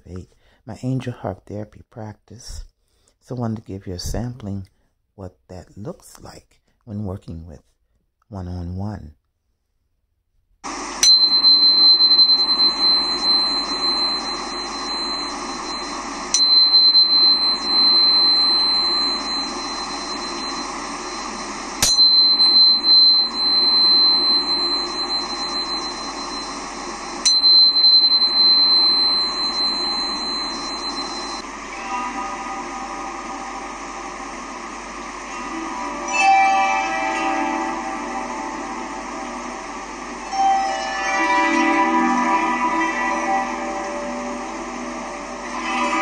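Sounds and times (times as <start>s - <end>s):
high pure ringing tone: 10.6s - 46.0s.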